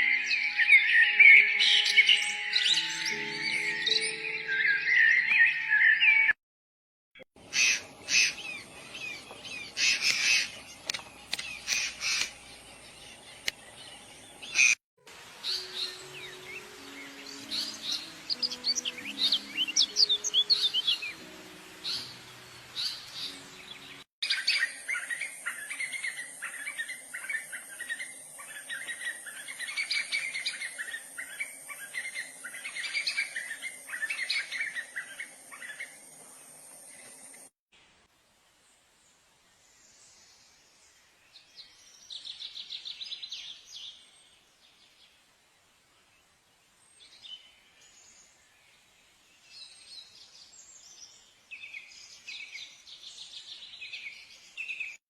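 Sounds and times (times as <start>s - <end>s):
birds chirping: 7.4s - 37.5s
steady high hiss: 14.6s - 41.1s.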